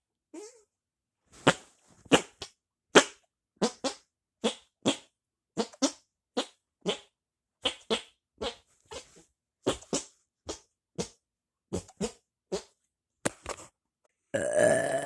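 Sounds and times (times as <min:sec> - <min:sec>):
armpit farts: 0:01.4 - 0:12.8.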